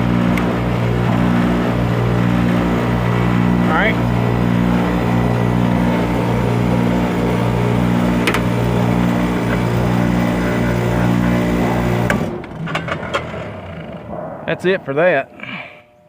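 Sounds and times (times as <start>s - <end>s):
heat pump compressor and fan hum: 0.0s - 12.4s.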